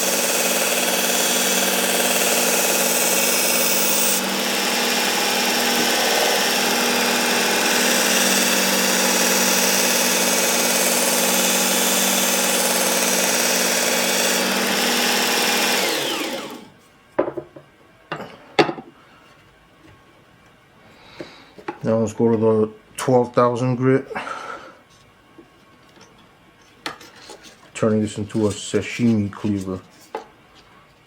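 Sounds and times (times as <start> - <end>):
belt sharpener grinding blade: 0.0 - 16.7
motor spinning down: 0.0 - 16.7.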